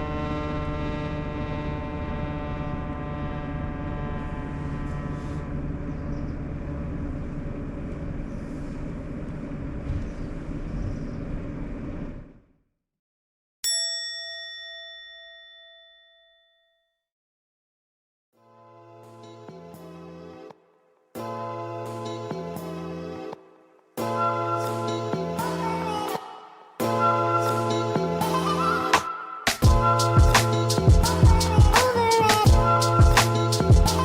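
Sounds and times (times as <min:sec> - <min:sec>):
low rumble: 0:00.9 - 0:12.5
bell-like ding: 0:13.6 - 0:17.0.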